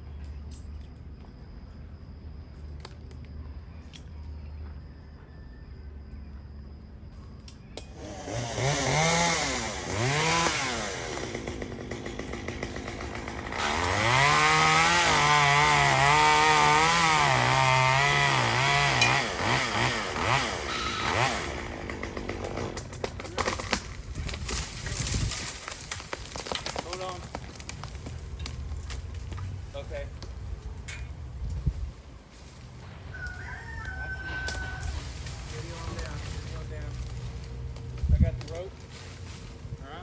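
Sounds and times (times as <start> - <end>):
chainsaw revving and cutting wood: 7.9 - 29.1, 34.6 - 38.8.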